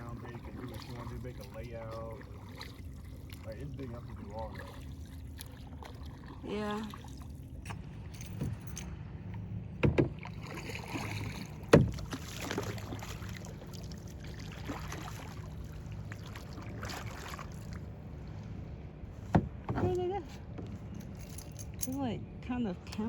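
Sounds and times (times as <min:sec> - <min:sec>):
paddle splashing in water: 0:00.0 - 0:07.9, 0:09.8 - 0:18.4
paddle knocking on canoe hull: 0:09.8 - 0:12.7, 0:19.3 - 0:20.0.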